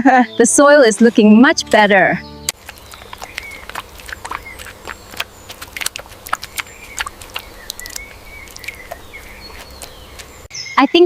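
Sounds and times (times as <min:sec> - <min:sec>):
bird chirps: 0:00.0 - 0:11.0
hand tool scraping soil: 0:02.5 - 0:10.5.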